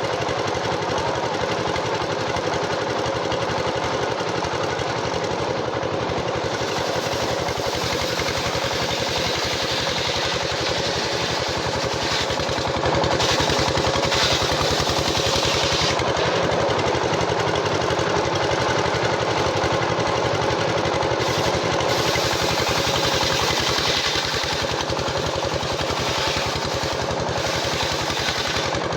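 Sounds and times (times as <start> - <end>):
sawmill machinery drone: 0.0 - 28.9.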